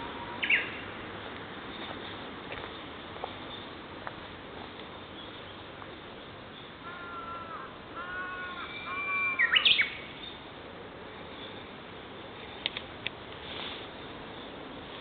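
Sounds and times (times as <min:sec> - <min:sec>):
bush warbler singing: 0:00.0 - 0:04.0, 0:08.5 - 0:15.0.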